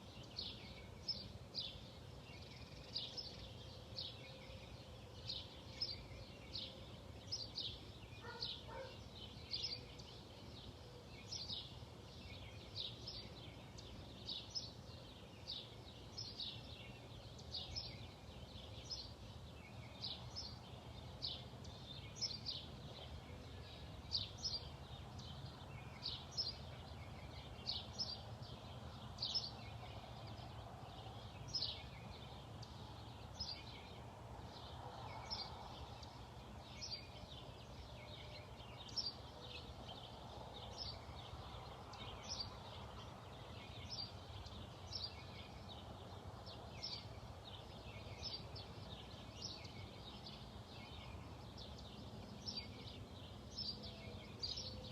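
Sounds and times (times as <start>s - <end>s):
small bird chirping: 0.0s - 34.1s.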